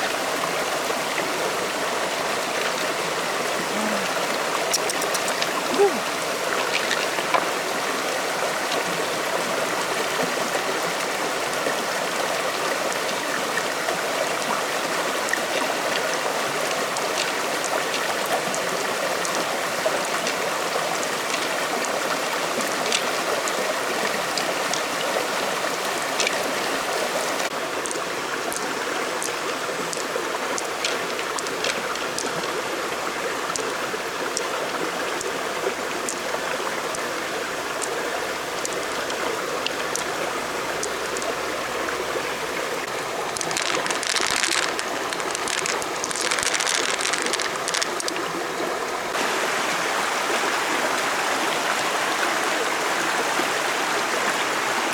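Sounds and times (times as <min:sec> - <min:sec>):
stream water rushing and splashing: 0:00.0 - 0:54.9
small clicks: 0:04.7 - 0:05.6, 0:43.4 - 0:48.3.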